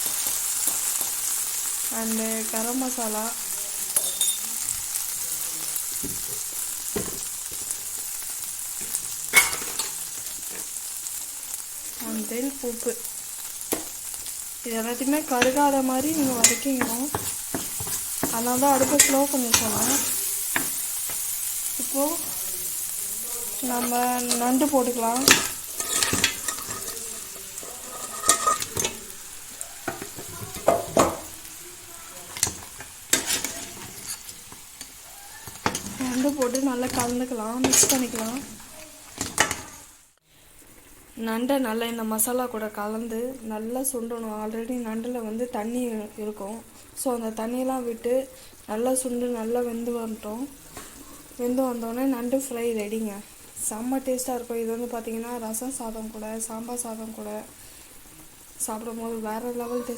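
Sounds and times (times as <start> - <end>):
spice paste sizzling in oil: 0.0 - 59.9
crab clattering against pan: 8.8 - 10.7, 15.1 - 21.3, 23.5 - 31.6, 32.2 - 39.8
soft stirring knocks: 15.1 - 21.3, 23.7 - 39.8.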